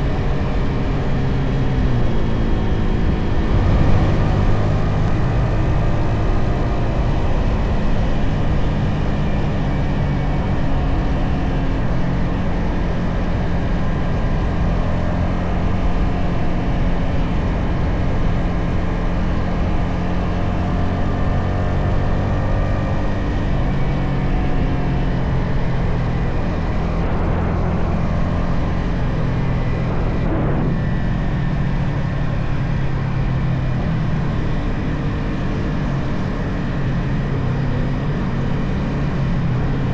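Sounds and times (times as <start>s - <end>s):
motorcycle engine running: 0.0s - 39.9s
rush of air: 26.3s - 32.0s.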